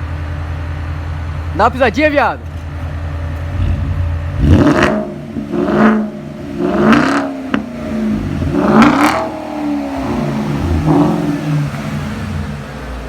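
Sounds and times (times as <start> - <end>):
car engine revving: 3.3 - 13.0.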